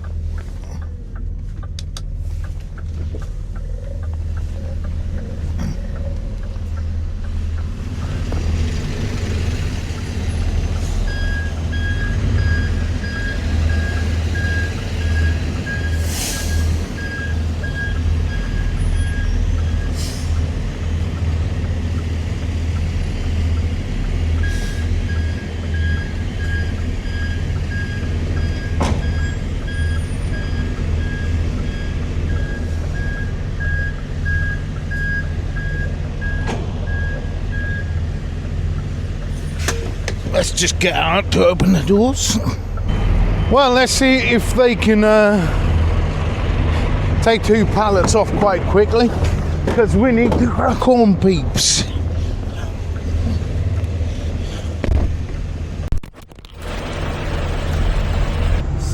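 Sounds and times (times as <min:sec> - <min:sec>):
diesel engine running: 0:00.0 - 0:58.9
reversing alarm beeping: 0:11.0 - 0:20.3, 0:24.4 - 0:38.0
air brake hisses: 0:16.0 - 0:16.8, 0:20.0 - 0:20.4.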